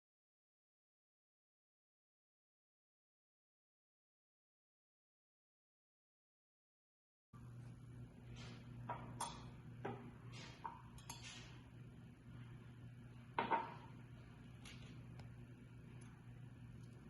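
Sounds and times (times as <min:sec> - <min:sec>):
low electrical hum: 0:07.4 - 0:17.0.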